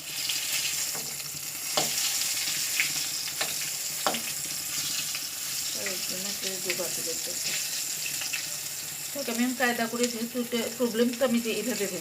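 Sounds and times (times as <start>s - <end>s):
chicken deep-frying in oil: 0.0s - 12.0s.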